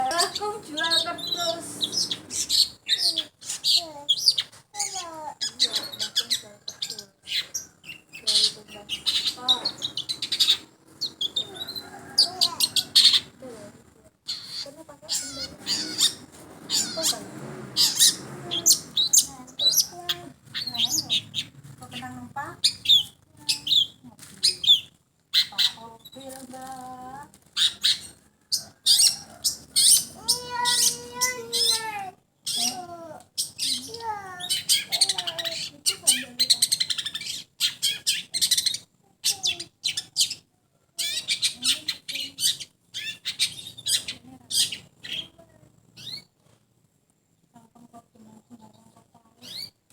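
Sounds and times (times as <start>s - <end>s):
bird singing: 0.0s - 45.4s, 46.0s - 46.3s, 48.6s - 49.8s.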